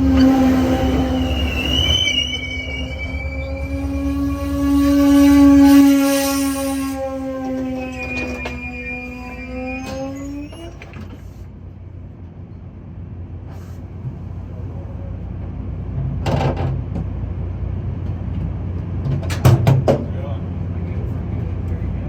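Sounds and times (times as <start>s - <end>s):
train horn: 0.0s - 9.9s
train rumble: 0.0s - 22.0s.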